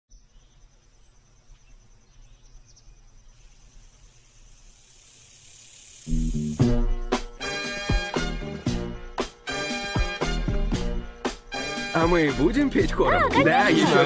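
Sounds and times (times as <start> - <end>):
insect trill: 0.1 - 10.0
soft hiss: 0.3 - 7.9
loud music: 6.6 - 14.0.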